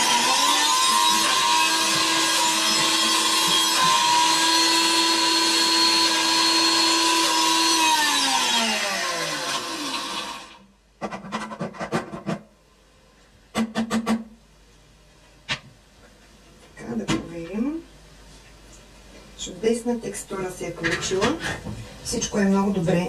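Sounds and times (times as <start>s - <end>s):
blender motor running: 0.0s - 10.6s.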